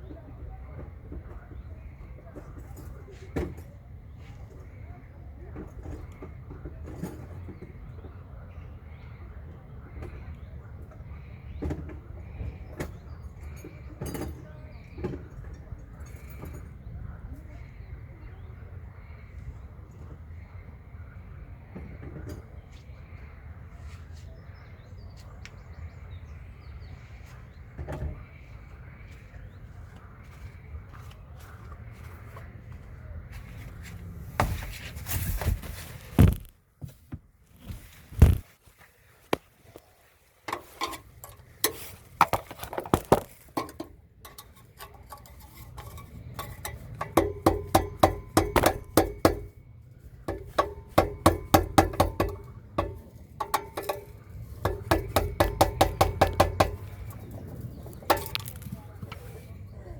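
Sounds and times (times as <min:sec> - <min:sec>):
metallic clinks and knocks: 0:40.5 - 0:49.6, 0:50.2 - 0:58.8.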